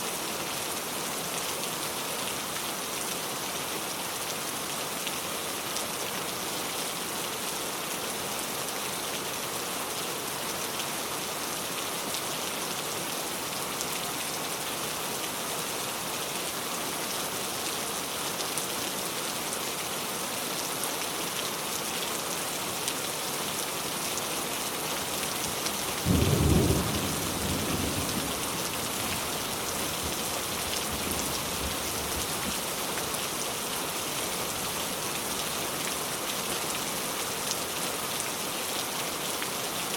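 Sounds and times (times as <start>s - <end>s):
rain hissing: 25.0s - 35.2s
thunderclap rumbling: 26.1s - 29.2s.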